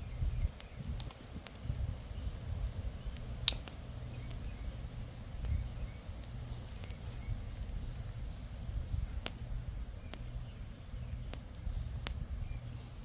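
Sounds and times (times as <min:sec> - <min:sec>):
campfire crackling: 0:00.0 - 0:13.0.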